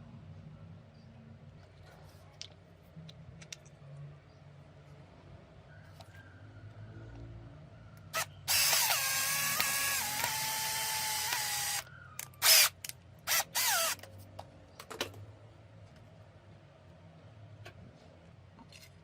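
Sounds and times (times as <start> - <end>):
small power tool motor: 8.1 - 14.1.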